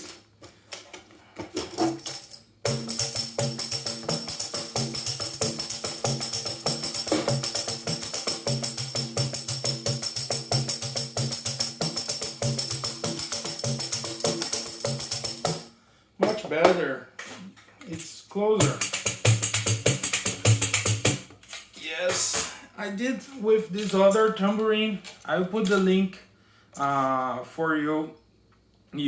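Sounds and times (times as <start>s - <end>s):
damped tambourine rhythm: 1.6s - 16.8s, 18.6s - 22.6s.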